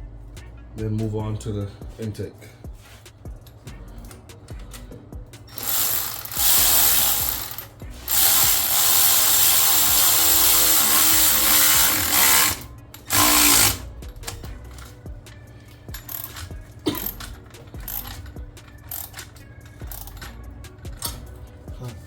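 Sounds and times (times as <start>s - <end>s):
power ratchet spinning nuts: 5.5s - 15.0s, 15.9s - 21.3s.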